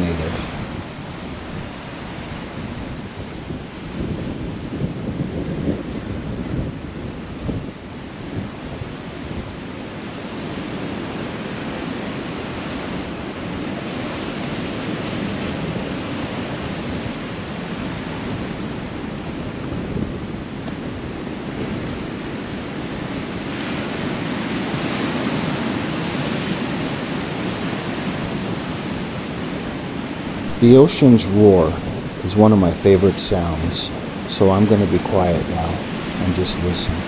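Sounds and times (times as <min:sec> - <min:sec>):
waves breaking: 0:30.3 - 0:37.0.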